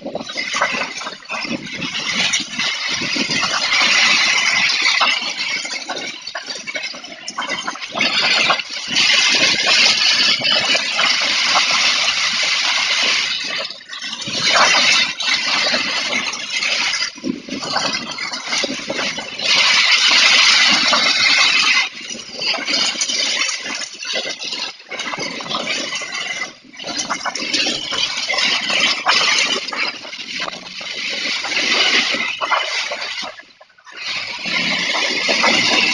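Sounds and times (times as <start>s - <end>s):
gusting wind: 0.0s - 35.9s.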